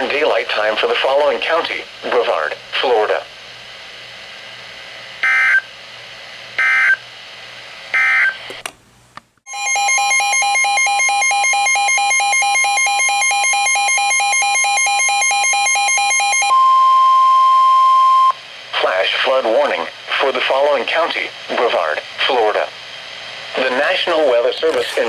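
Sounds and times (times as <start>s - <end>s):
steady radio alert tone: 23.6s - 25.0s.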